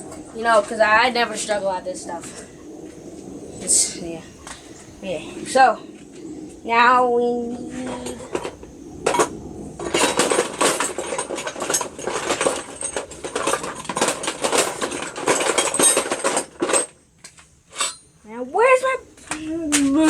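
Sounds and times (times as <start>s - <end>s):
metal tools clinking and rattling: 7.8s - 18.2s.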